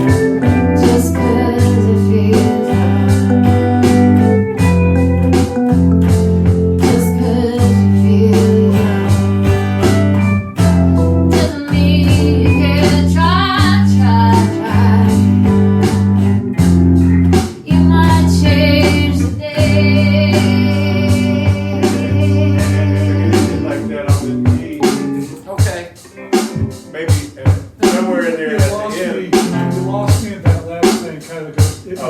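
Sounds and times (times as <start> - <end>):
low bass notes: 0.0 - 25.4
guitar: 0.0 - 32.0
steady drum beat: 0.0 - 32.0.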